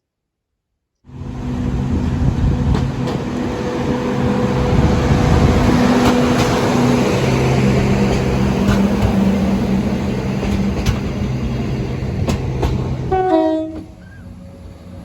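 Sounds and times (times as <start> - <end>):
train passing: 1.1 - 15.0.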